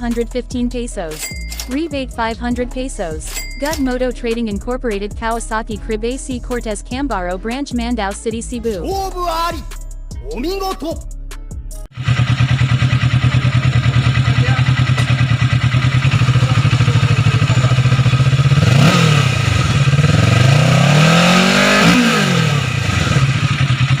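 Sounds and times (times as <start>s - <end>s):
motorcycle engine idling and revving: 11.9s - 24.0s.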